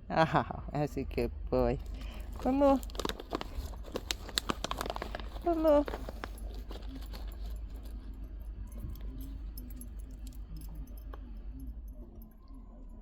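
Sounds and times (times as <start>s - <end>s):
cat crunching treats: 1.7s - 12.1s.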